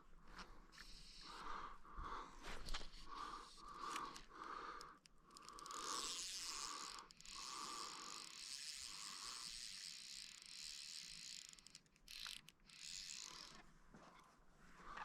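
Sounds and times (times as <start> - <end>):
fly reel drag buzzing: 0.7 - 1.5, 2.8 - 13.6.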